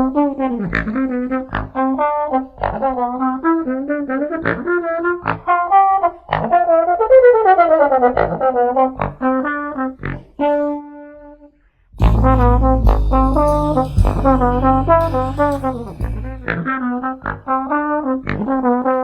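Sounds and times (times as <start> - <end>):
trombone melody: 12.0 - 16.6.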